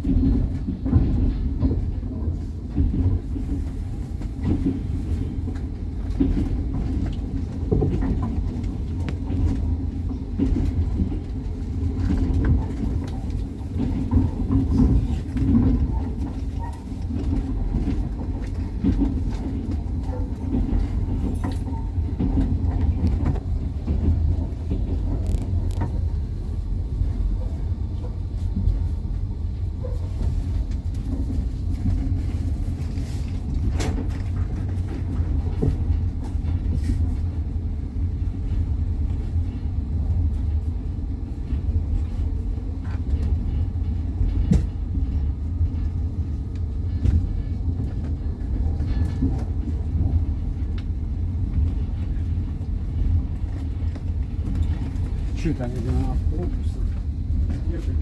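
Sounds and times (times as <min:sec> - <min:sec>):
train wheels rumbling on track: 0:00.0 - 0:58.0.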